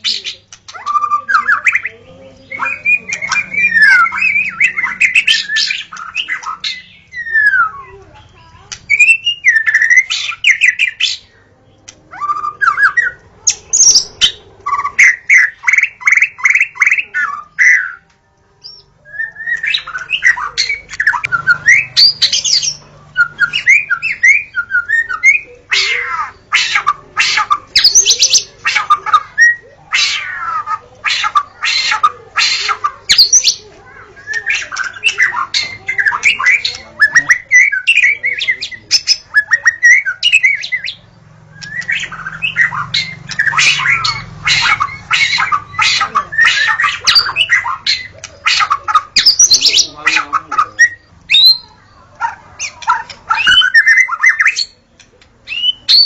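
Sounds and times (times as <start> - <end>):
bird singing whistles and clicks: 2.6 - 7.8, 17.6 - 22.1, 41.6 - 44.2.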